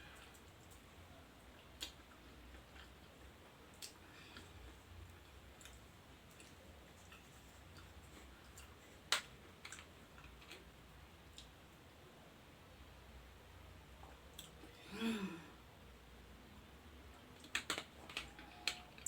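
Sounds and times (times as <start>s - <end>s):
low room hum: 0.0s - 19.0s
eating clicks and smacks: 1.8s - 4.5s, 5.2s - 10.7s, 17.1s - 19.0s.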